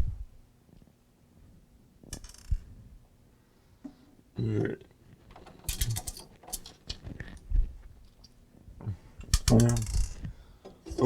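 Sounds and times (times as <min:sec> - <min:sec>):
small metal parts clicking and rattling: 0:02.1 - 0:02.6, 0:05.3 - 0:07.4, 0:09.2 - 0:11.0.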